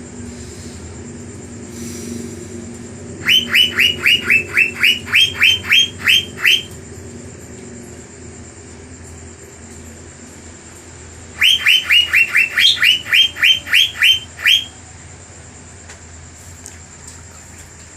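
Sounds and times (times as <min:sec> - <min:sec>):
low background hum: 0:00.0 - 0:17.9
bird whistling downward notes: 0:03.2 - 0:06.7, 0:11.4 - 0:14.8.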